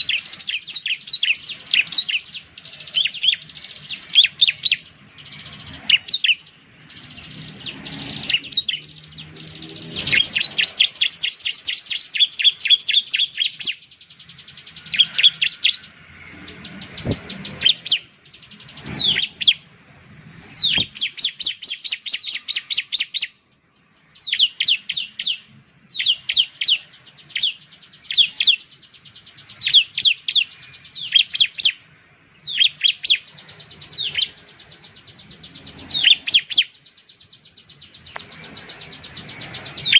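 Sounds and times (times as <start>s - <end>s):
bird singing sharp high notes: 0.0s - 19.7s, 20.4s - 39.9s.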